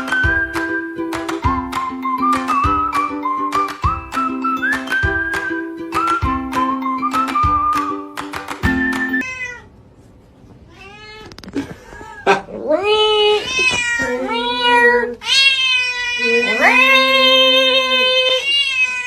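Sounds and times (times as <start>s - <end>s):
cat yowling meows: 9.2s - 9.7s, 13.2s - 17.3s, 18.2s - 19.0s.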